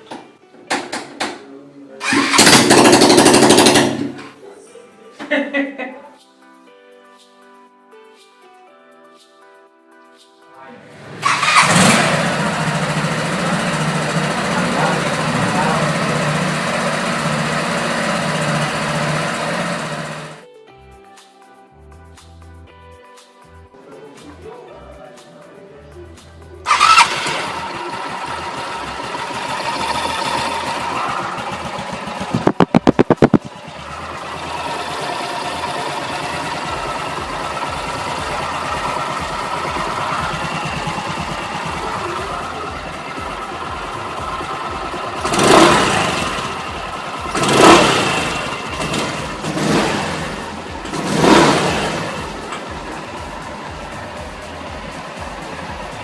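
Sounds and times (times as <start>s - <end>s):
scooter engine idling: 2.0s - 4.3s, 10.9s - 20.4s, 26.7s - 56.0s
loud engine thumps: 2.1s - 4.2s, 31.4s - 33.5s.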